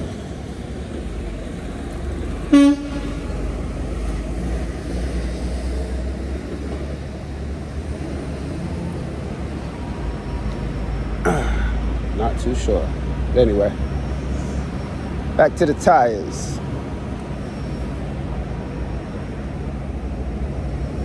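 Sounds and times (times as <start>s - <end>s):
wind and road rumble: 0.0s - 21.0s
short horn toot: 2.5s - 3.2s.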